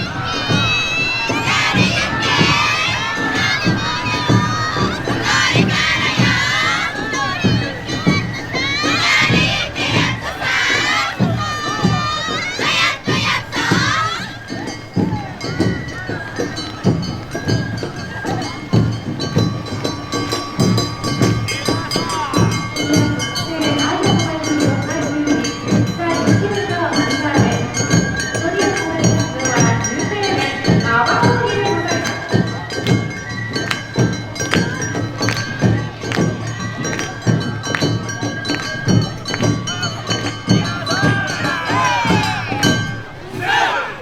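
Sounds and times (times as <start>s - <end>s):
sustained high tones: 0.0s - 15.9s
heavy drum beats: 0.0s - 43.7s
high held tones: 0.0s - 43.8s.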